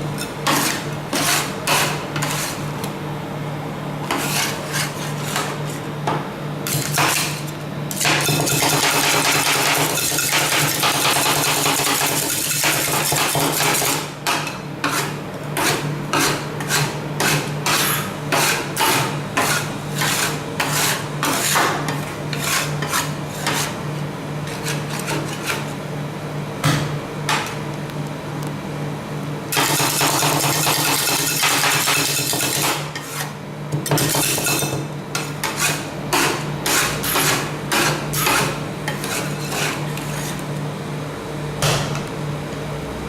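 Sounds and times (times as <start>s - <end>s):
metal spatulas chopping: 0.2s - 2.5s, 6.7s - 23.7s, 29.6s - 33.2s, 33.8s - 40.4s
spatulas scraping metal plate: 0.5s - 2.6s, 4.1s - 5.6s, 14.8s - 23.8s, 24.4s - 25.7s, 34.0s - 40.4s.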